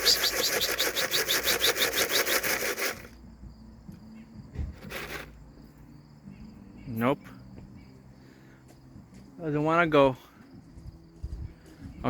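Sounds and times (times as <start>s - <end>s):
loud rapid rattling shake: 0.0s - 3.2s
insects chirring: 0.0s - 12.0s.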